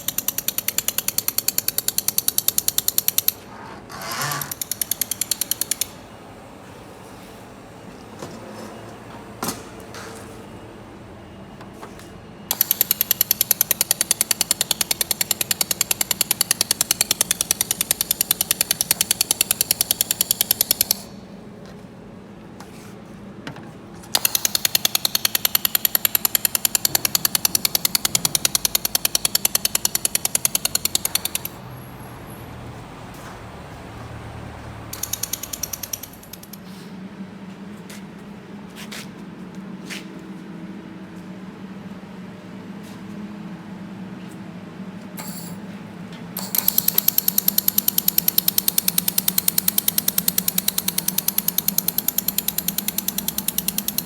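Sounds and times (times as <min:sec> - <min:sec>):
laser welder crackling pulses: 0:46.4 - 0:54.0.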